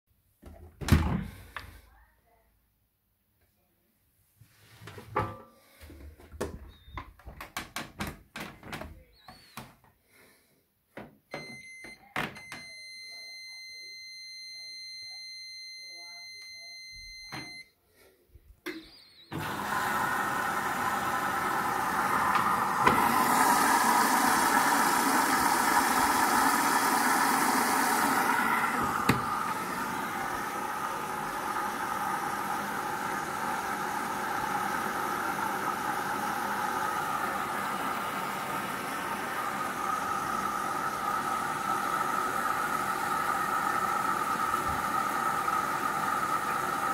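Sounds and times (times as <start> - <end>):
washing machine running: 19.3 - 46.9.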